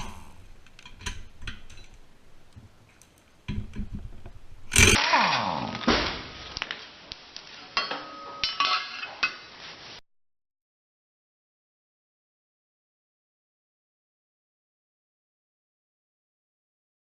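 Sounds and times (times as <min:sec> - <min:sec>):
metal tools clanking: 0:07.8 - 0:09.4.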